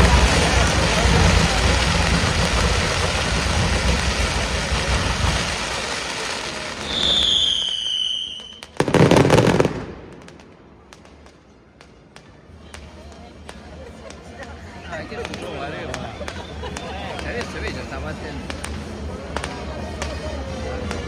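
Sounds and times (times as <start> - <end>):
fireworks crackling: 0.0 - 21.0
firework whistle falling in pitch: 6.5 - 9.6.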